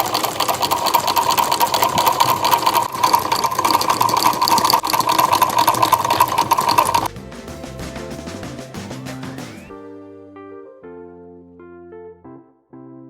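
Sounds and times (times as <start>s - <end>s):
sewing machine stitching: 0.0s - 7.1s
music: 6.6s - 13.0s.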